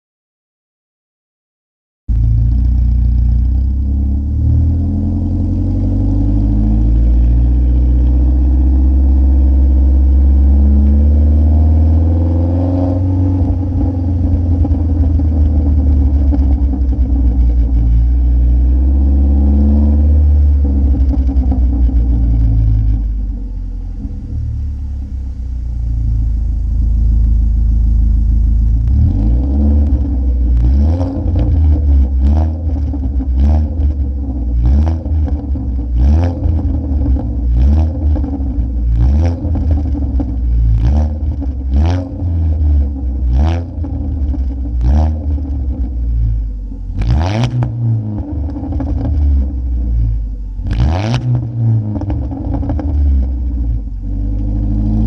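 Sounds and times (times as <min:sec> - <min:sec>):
car engine revving: 0:02.1 - 0:55.0
exhaust crackles and pops: 0:02.1 - 0:55.0
loud exhaust bangs: 0:23.7 - 0:50.0.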